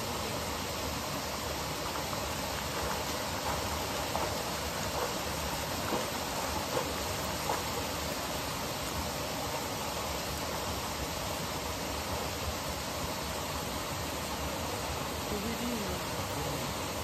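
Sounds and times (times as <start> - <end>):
water splashes: 0.0 - 17.0
waterfall rushing: 0.0 - 17.0.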